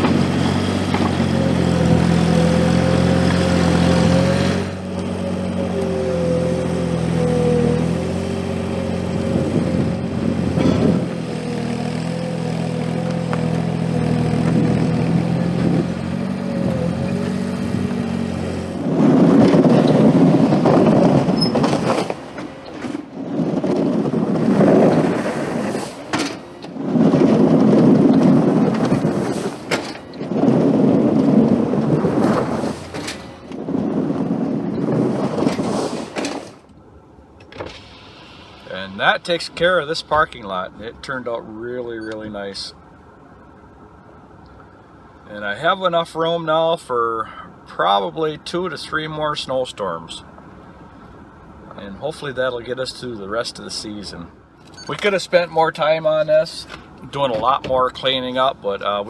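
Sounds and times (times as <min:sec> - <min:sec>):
skid steer engine running: 0:00.0 - 0:35.7.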